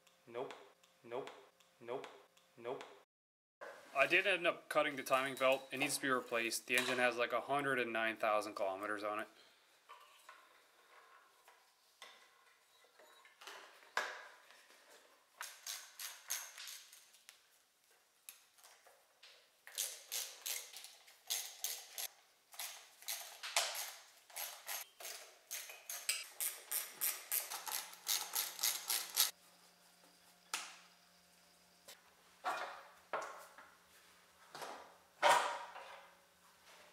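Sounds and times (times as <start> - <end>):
hand tools clicking on metal: 19.7 - 29.3.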